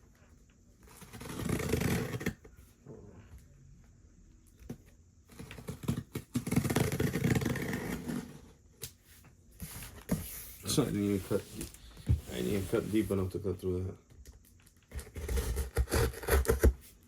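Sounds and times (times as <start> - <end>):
knife slicing cardboard and tape: 14.9 - 16.9.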